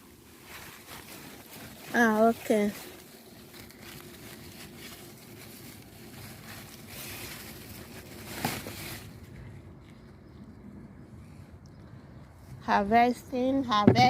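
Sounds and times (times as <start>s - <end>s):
rustling of plants being handled: 0.0s - 11.6s.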